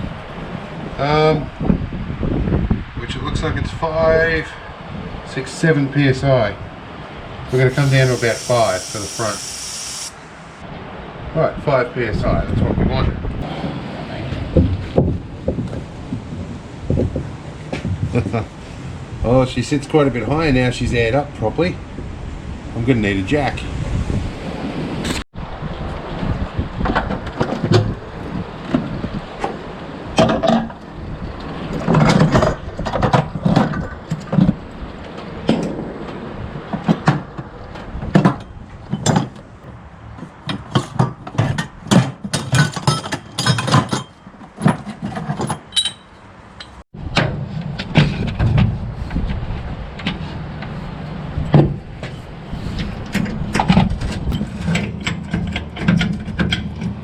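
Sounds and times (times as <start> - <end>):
jack and hand tools clanking: 40.6 - 46.8.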